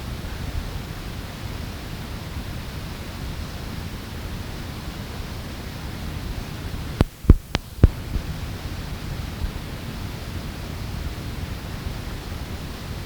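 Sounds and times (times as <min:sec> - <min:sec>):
tape rumble and hiss: 0:00.0 - 0:13.0
sharp clicks: 0:07.0 - 0:08.0.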